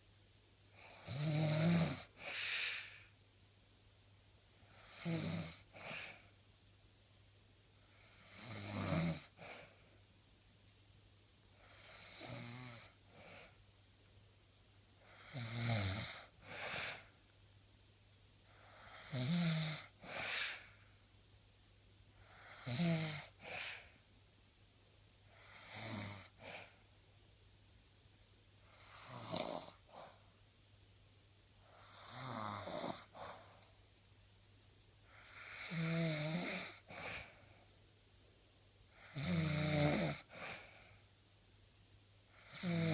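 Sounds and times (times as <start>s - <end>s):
person snoring: 0.8s - 3.1s, 4.6s - 6.2s, 7.9s - 9.7s, 11.6s - 13.5s, 15.0s - 17.1s, 18.5s - 20.8s, 22.2s - 24.0s, 25.3s - 26.8s, 28.6s - 30.2s, 31.7s - 33.6s, 35.1s - 37.5s, 38.9s - 41.0s, 42.3s - 42.9s.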